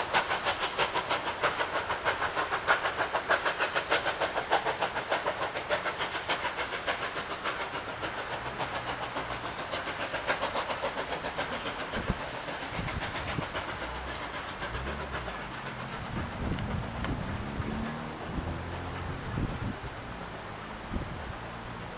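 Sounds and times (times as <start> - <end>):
steam hiss: 0.0 - 21.9
steam locomotive exhaust beats: 0.0 - 21.9
low rumble: 13.0 - 21.4.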